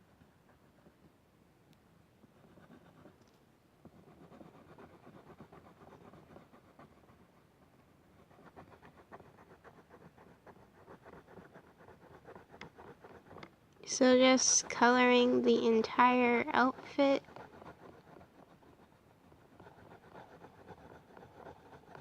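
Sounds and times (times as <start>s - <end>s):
pencil scratching on paper: 0.1s - 1.2s, 2.2s - 3.2s, 3.8s - 22.0s.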